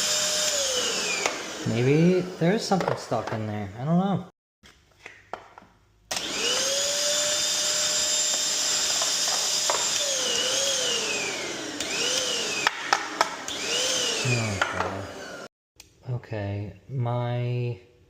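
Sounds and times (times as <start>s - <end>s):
vacuum motor whine: 0.0s - 2.6s, 6.1s - 15.5s.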